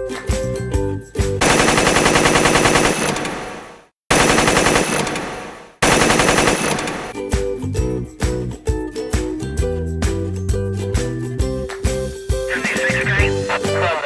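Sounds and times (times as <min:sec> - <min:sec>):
cheerful background music: 0:00.0 - 0:01.4, 0:07.2 - 0:14.0
rapid machine-gun fire: 0:01.4 - 0:07.2.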